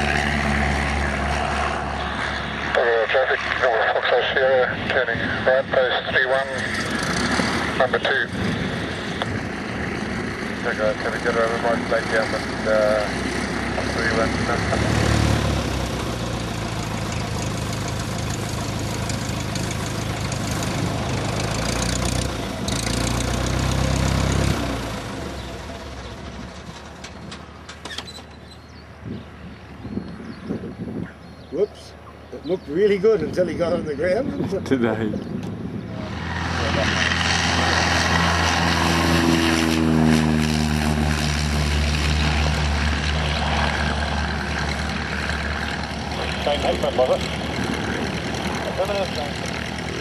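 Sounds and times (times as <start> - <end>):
light aircraft engine and propeller: 0.0 - 50.0
wind noise: 6.6 - 10.3, 29.0 - 31.4, 33.2 - 39.1.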